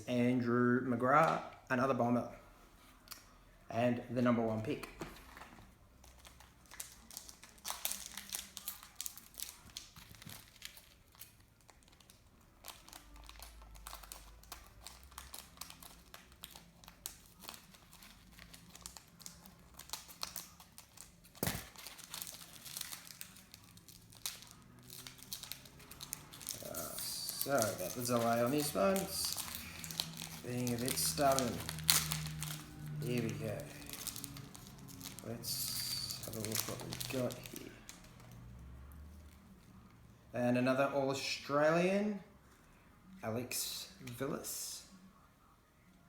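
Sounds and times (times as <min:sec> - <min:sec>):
foil wrapper crinkling and tearing: 0:06.0 - 0:38.5.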